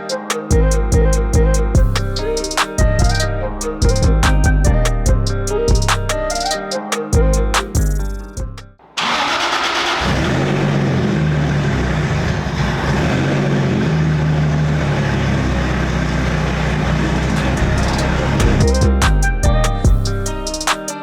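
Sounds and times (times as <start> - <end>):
background music: 0.0 - 8.8, 17.4 - 21.0
vehicle engine running: 7.8 - 20.5.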